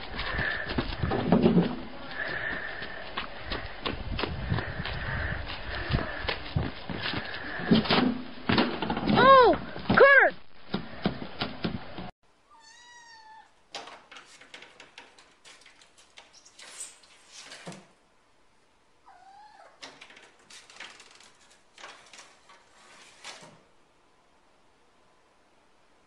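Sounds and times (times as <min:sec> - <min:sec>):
pet animal crying out: 0:12.5 - 0:13.5, 0:19.1 - 0:19.8.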